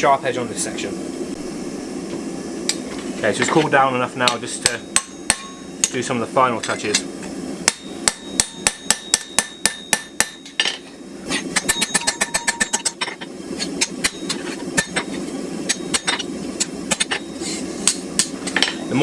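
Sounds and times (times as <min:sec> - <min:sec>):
steady low hum: 0:00.0 - 0:19.0
hammer striking steel on anvil: 0:04.2 - 0:06.0, 0:06.6 - 0:18.9.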